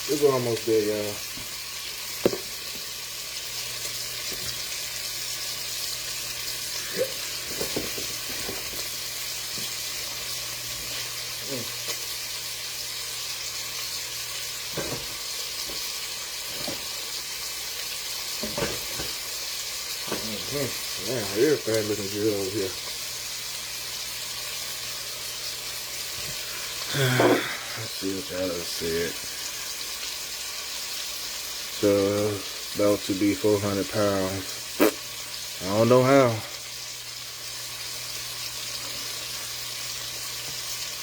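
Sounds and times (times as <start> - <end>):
meat sizzling in a pan: 0.0 - 41.0.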